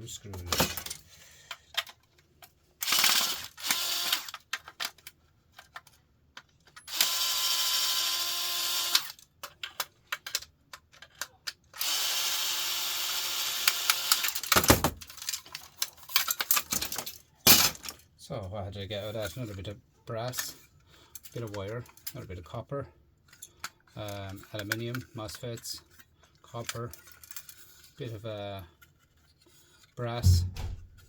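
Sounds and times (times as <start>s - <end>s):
screws and parts rattling: 0.1s - 6.9s, 9.0s - 11.8s, 13.8s - 18.1s, 23.2s - 31.0s
cordless drill driving screws: 2.8s - 4.3s, 6.9s - 9.1s, 11.8s - 14.4s.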